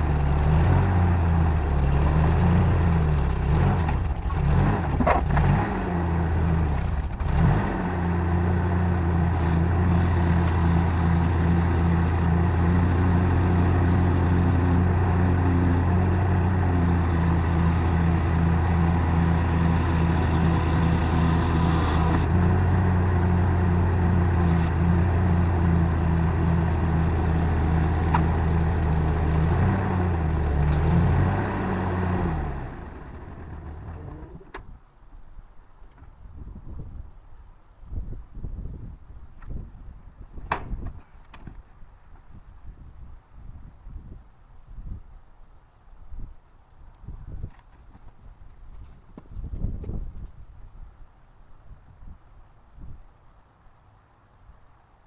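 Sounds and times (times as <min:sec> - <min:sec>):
tractor engine running: 0:00.0 - 0:34.6.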